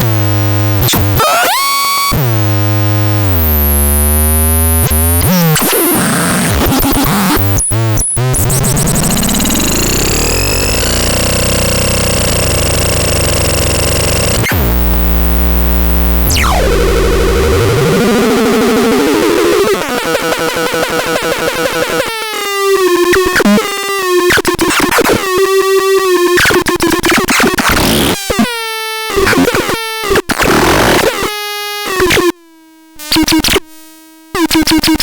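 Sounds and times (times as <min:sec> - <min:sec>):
synthesizer buzzy tones and sweeps: 0:00.0 - 0:22.4.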